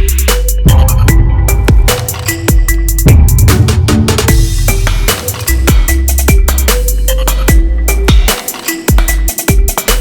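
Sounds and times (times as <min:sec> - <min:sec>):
deep sustained bass: 0:00.0 - 0:08.0
electronic drum hits: 0:00.7 - 0:05.9.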